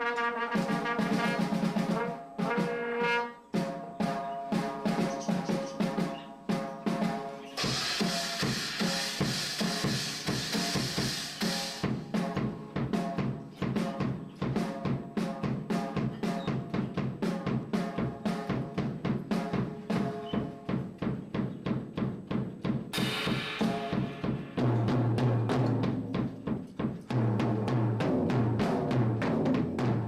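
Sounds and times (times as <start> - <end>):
drum kit playing a steady beat: 0.0 - 30.0
low booming drum: 7.0 - 30.0
cymbal crash: 7.6 - 12.3, 22.9 - 25.3.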